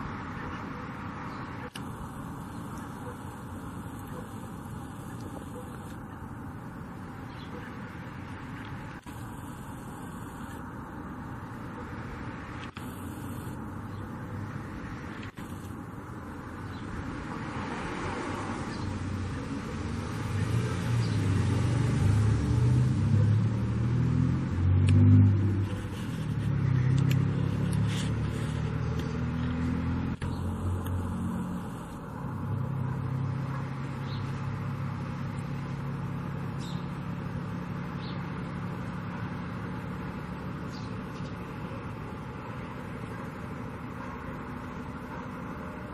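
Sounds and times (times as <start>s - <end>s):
motor engine humming: 0.7s - 17.6s.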